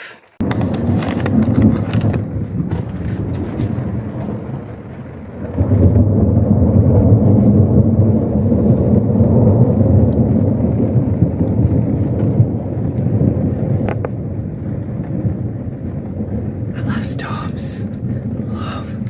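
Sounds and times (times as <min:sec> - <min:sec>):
thunder rolling: 0:00.4 - 0:19.0.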